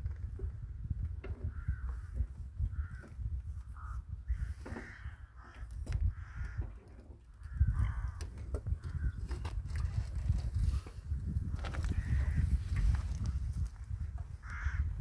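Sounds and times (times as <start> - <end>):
crows cawing: 1.5 - 1.9, 2.7 - 3.1, 3.8 - 6.8, 7.4 - 9.2, 14.4 - 15.0.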